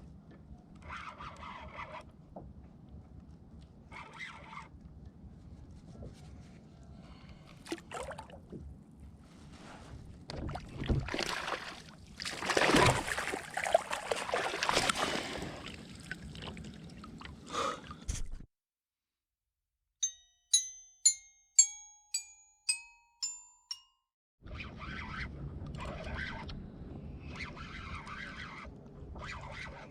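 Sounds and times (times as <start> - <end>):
water sloshing: 7.6 - 8.6, 10.3 - 17.4
rustling splashes: 10.4 - 17.4
bright ringing chime notes: 20.0 - 24.1.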